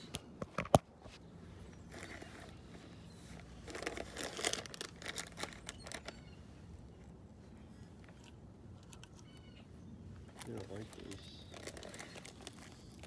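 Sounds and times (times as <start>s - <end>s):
treat packet crinkling: 3.4s - 6.2s, 10.4s - 13.0s.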